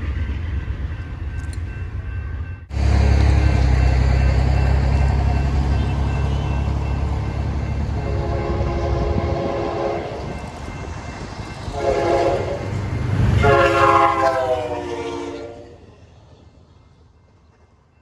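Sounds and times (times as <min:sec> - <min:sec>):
passing train rumble: 0:00.0 - 0:18.0
locomotive air horn blasts: 0:08.0 - 0:10.3, 0:11.7 - 0:12.8, 0:13.4 - 0:15.8.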